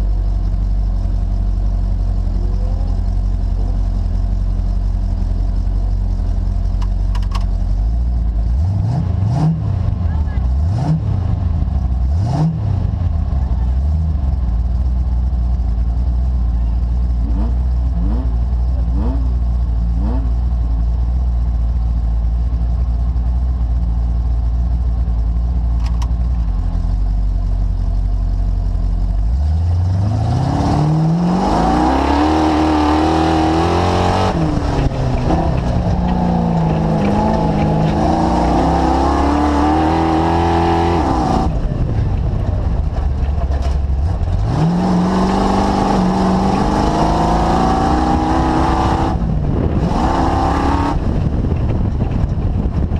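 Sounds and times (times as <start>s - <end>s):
vehicle engine revving: 0.9s - 15.9s, 16.5s - 20.7s, 29.2s - 52.9s.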